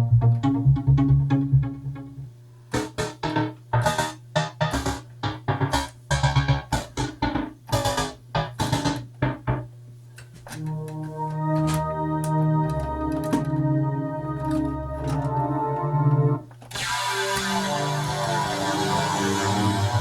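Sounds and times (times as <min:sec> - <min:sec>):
synthesizer short notes: 0:00.0 - 0:09.6, 0:10.6 - 0:20.0
sustained organ-like chord: 0:10.5 - 0:20.0.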